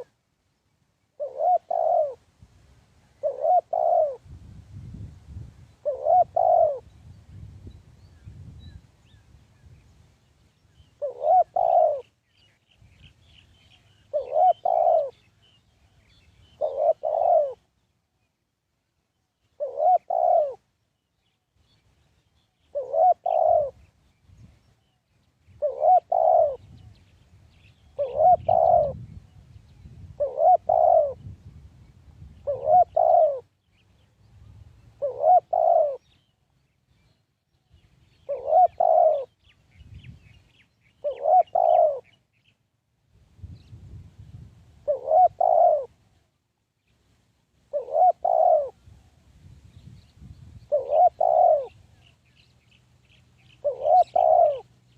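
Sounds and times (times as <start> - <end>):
dove cooing: 1.2 - 2.2, 3.2 - 4.2, 5.8 - 6.9, 10.8 - 12.2, 13.9 - 15.3, 16.4 - 17.7, 19.5 - 20.7, 22.7 - 23.9, 25.6 - 27.0, 27.8 - 29.2, 30.0 - 31.3, 32.4 - 33.5, 34.9 - 36.2, 38.1 - 39.4, 41.0 - 42.2, 44.8 - 46.0, 47.7 - 48.8, 50.7 - 52.0, 53.5 - 54.8
small birds chirping: 5.8 - 18.4, 49.6 - 54.9.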